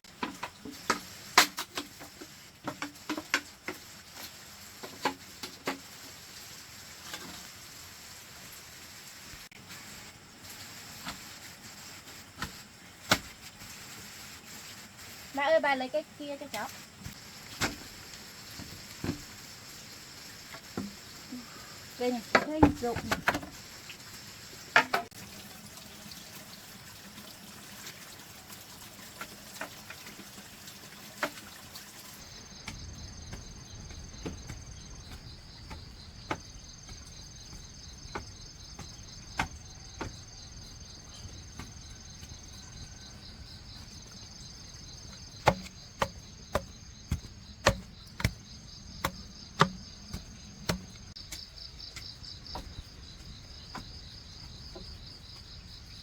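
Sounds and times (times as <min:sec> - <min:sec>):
insects chirring: 0:00.1 - 0:27.5, 0:28.6 - 0:56.0
knocks on bamboo: 0:32.4 - 0:43.0, 0:45.1 - 0:52.8.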